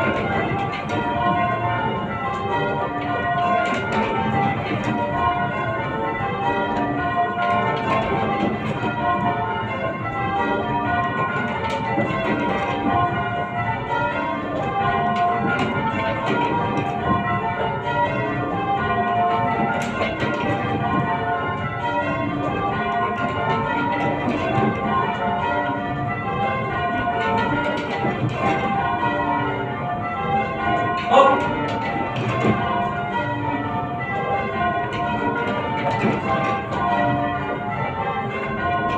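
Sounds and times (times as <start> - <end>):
church bells change-ringing: 0.0 - 38.9.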